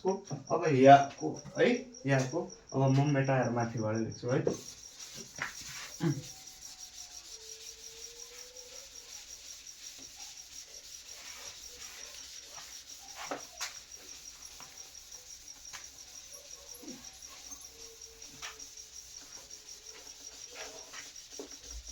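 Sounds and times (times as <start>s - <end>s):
cricket chirping: 0.0s - 21.9s.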